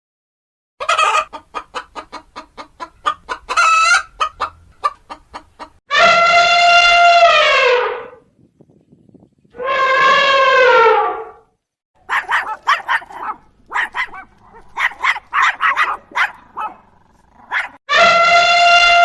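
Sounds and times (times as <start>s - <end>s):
dog barking sharply: 12.0s - 16.9s, 17.5s - 17.8s.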